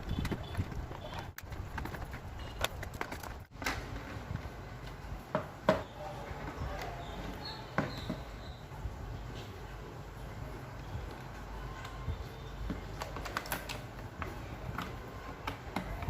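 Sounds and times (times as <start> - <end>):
plastic parts clicking and knocking: 0.0 - 7.0, 11.0 - 16.0.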